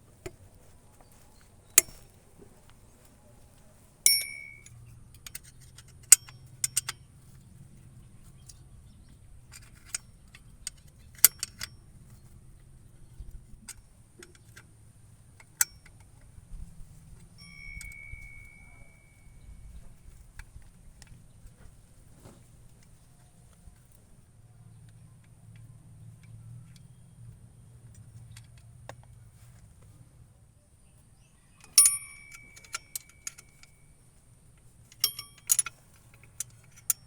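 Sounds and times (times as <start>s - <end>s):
struck metal ringing: 4.1s - 4.7s, 17.4s - 19.6s, 31.6s - 33.9s
metal hand tools clinking: 4.1s - 6.9s, 17.4s - 19.4s, 31.6s - 34.0s, 34.8s - 37.0s
sharp clicks: 31.6s - 33.8s.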